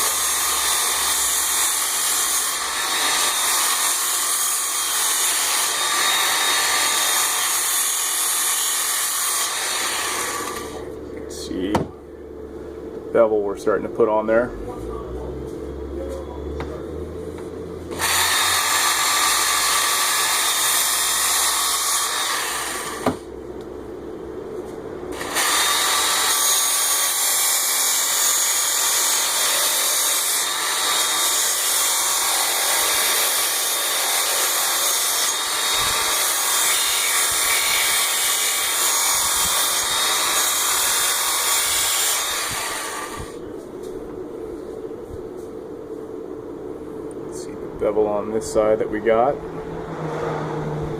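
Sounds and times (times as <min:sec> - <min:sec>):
belt sharpener grinding steel: 0:00.0 - 0:10.9, 0:17.9 - 0:23.0, 0:25.2 - 0:43.1.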